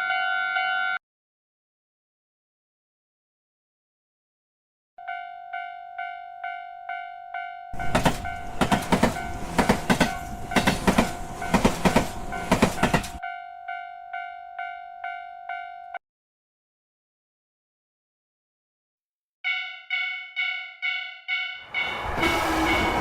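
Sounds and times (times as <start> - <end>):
crossing bell ringing: 0.0 - 1.0, 5.0 - 16.0, 19.5 - 23.0
train wheels clattering: 7.8 - 13.2, 21.6 - 23.0.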